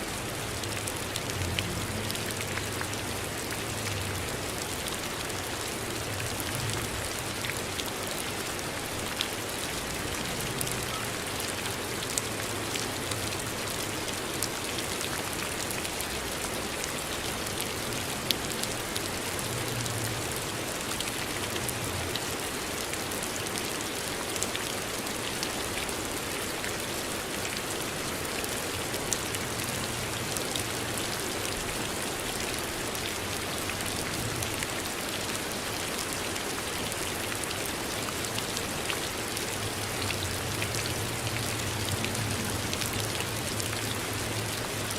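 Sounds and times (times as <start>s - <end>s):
steady rain hiss: 0.0s - 44.9s.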